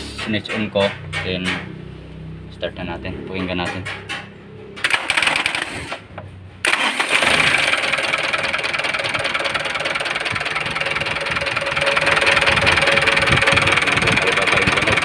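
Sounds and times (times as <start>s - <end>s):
diesel engine knocking: 3.3s - 15.0s.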